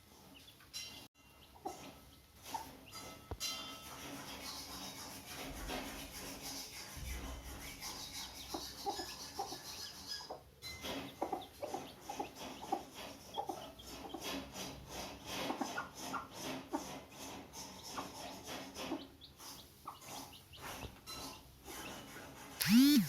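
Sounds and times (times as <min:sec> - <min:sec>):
chicks cheeping faintly: 0:00.1 - 0:03.2, 0:06.4 - 0:23.0
hen clucking: 0:08.4 - 0:14.4.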